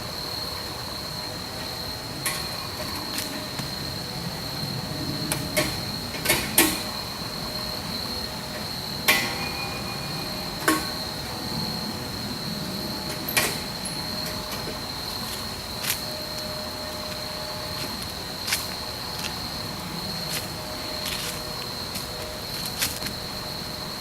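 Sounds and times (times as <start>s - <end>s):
high-pitched insect drone: 0.0s - 24.0s
sharp metallic knocks and clicks: 5.3s - 6.9s, 9.1s - 11.1s.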